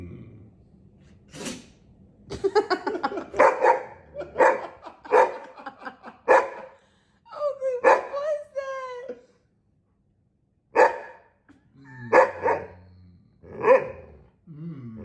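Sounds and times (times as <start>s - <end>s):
dog sneezing: 1.2s - 1.8s
dog barking: 3.3s - 5.6s, 6.2s - 6.8s, 7.8s - 8.2s, 10.8s - 11.3s, 12.1s - 12.8s, 13.6s - 14.1s.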